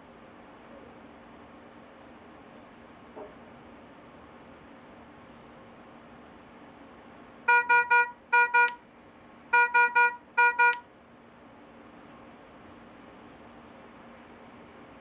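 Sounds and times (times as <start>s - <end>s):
patient monitor alarm beeps: 7.5s - 8.8s, 9.6s - 10.8s.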